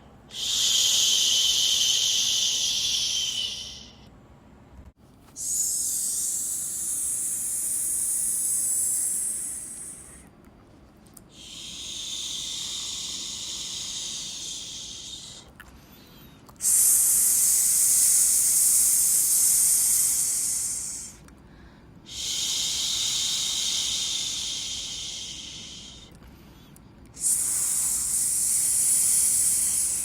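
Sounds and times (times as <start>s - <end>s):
person shushing: 5.4s - 10.2s.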